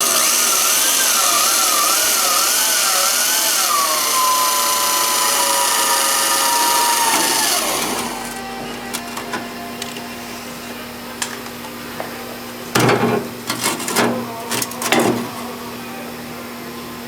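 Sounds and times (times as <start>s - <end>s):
power tool whining on metal: 0.0s - 15.9s.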